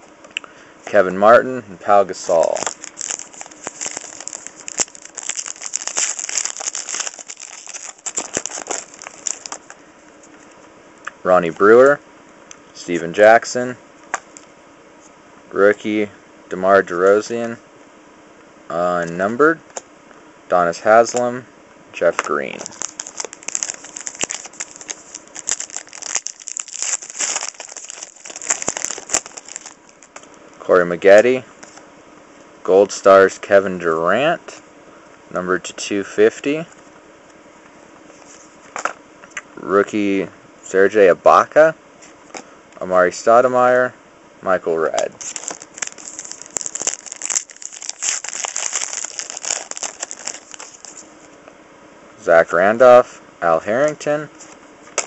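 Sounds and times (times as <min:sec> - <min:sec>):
wrapper crinkling: 0:02.2 - 0:09.8, 0:22.4 - 0:30.3, 0:45.2 - 0:51.2.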